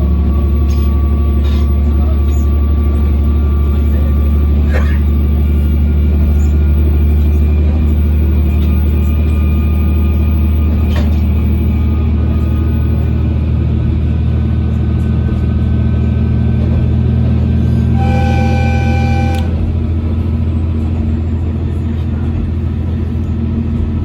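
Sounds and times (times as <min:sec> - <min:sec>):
diesel railcar engine drone: 0:00.0 - 0:24.0
wheel and rail noise: 0:00.0 - 0:24.0
track clicks: 0:18.0 - 0:19.6.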